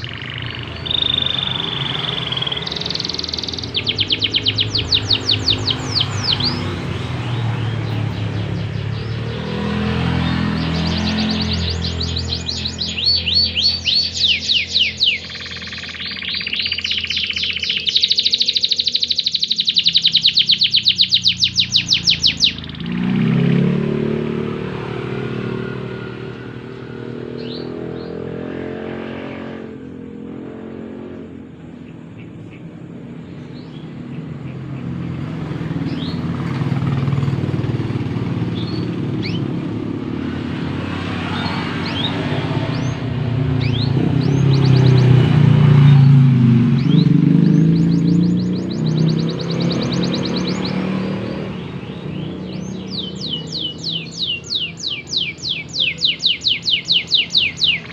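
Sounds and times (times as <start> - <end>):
faint chirps: 0.0 - 9.5
canary singing trills: 0.0 - 57.9.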